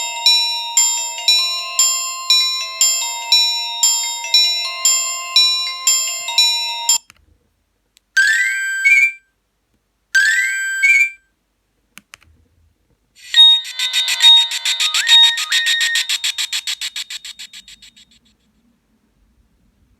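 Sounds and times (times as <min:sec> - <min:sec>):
chiming electronic ringtone melody: 0:00.0 - 0:07.0, 0:13.2 - 0:18.2
fast pulsing ringtone: 0:00.0 - 0:07.0, 0:13.2 - 0:18.2
short rising electronic sweeps: 0:13.2 - 0:18.2.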